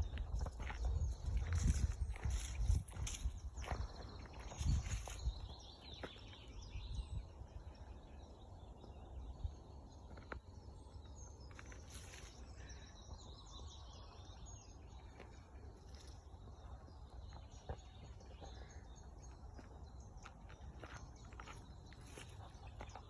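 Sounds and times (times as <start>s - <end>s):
faint birdsong: 0.0s - 23.0s.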